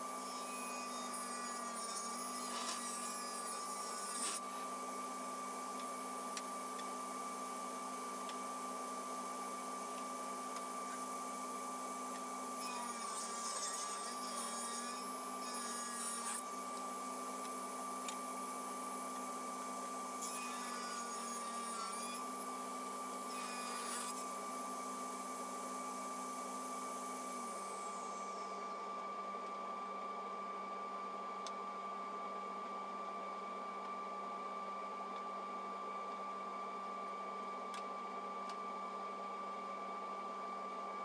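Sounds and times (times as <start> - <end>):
saw whining cutting wood: 0.0 - 29.3.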